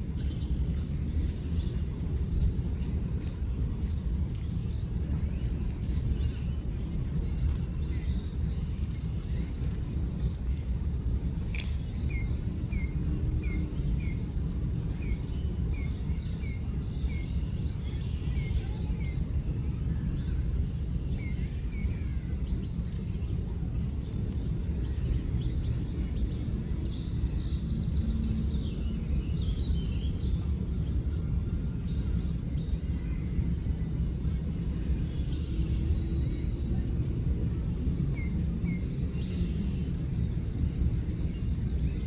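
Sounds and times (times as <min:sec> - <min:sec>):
low background rumble: 0:00.0 - 0:42.0
songbird high chirps: 0:11.5 - 0:19.5, 0:20.2 - 0:23.4, 0:24.8 - 0:40.1.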